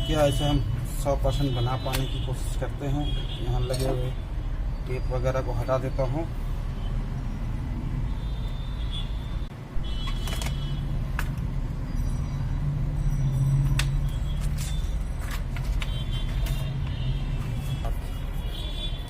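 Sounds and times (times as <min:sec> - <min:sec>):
clicks and scrapes from laptop keyboard: 0:13.7 - 0:18.6.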